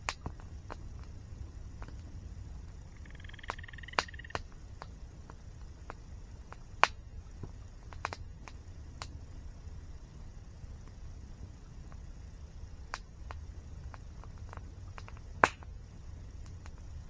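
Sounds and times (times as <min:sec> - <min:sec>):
campfire crackling: 0:00.0 - 0:17.0
low steady rumble: 0:00.0 - 0:17.0
short trilling call: 0:03.0 - 0:04.4.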